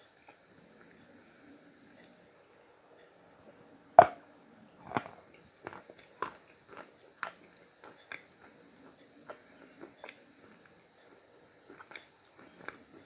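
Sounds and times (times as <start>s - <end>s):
chalk crunching while chewed: 4.8s - 10.7s, 11.7s - 13.0s.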